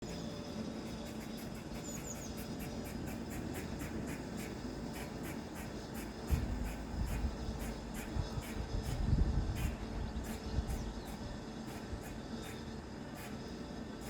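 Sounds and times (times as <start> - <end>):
bird chirps: 1.3 - 3.0.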